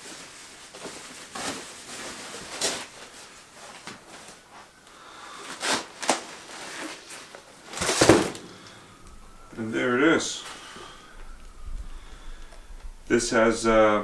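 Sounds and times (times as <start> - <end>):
packaging rustling: 0.0 - 9.6.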